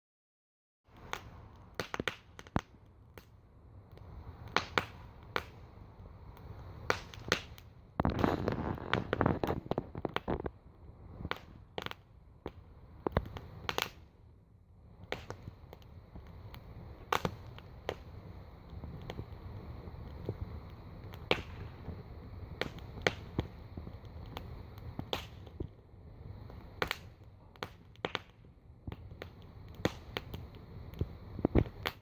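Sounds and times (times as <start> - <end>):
campfire crackling and popping: 0.9 - 32.0
fire rushing: 0.9 - 32.0.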